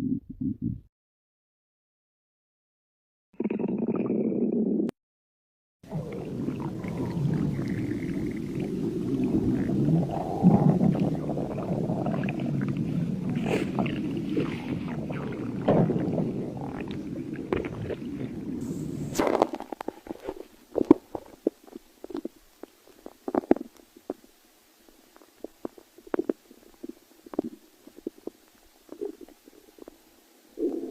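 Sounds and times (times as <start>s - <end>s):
stomach growling: 3.4s - 4.9s, 5.8s - 24.3s, 24.9s - 30.9s.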